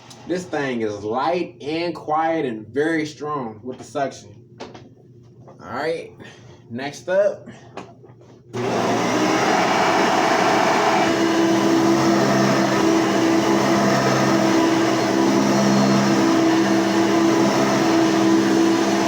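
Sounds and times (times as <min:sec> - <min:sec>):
upright vacuum cleaner whirring: 0:08.5 - 0:19.0.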